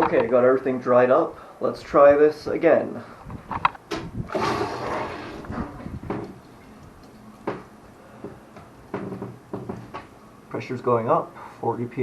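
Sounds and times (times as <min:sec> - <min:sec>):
water rushing into tank: 0:04.3 - 0:05.7.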